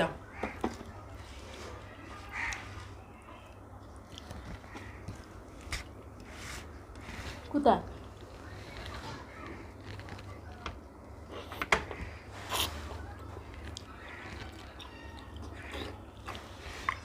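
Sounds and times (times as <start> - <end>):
wet chewing and squishing: 2.4 - 6.3, 12.4 - 17.0.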